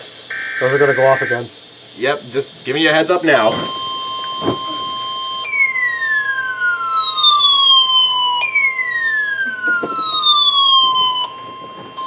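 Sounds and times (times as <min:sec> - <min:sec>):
steady alarm tone: 0:00.0 - 0:12.0
electronic siren gliding down: 0:03.7 - 0:12.0.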